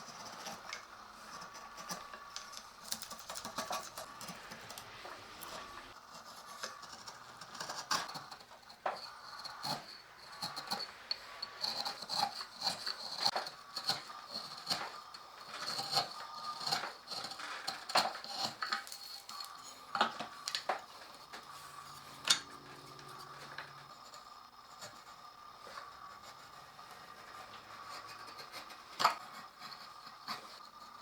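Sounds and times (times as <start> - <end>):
low steady hum: 19.1 - 30.4.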